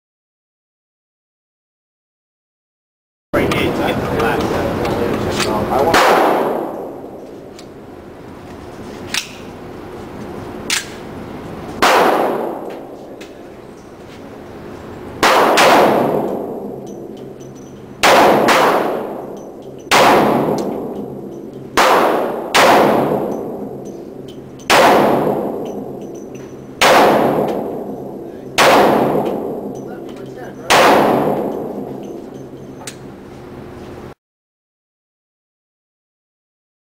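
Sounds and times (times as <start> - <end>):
gunshots with ringing echo: 5.8 - 7.2, 11.8 - 13.2, 15.2 - 17.2, 18.0 - 32.1.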